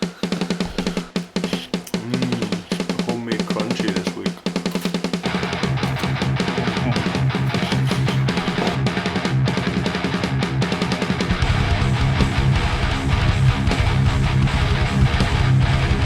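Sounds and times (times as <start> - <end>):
drums: 0.0 - 16.0
distorted electric guitar: 8.4 - 16.0.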